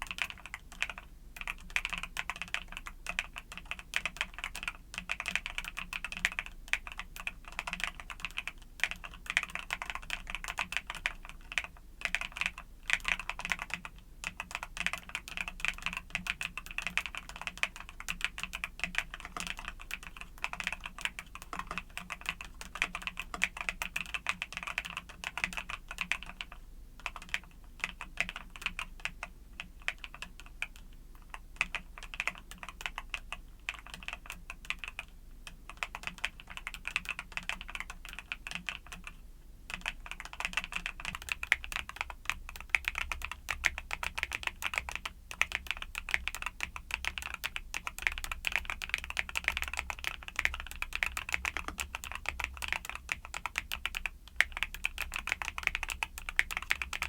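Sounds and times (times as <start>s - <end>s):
mechanical keyboard typing: 0.0s - 57.0s.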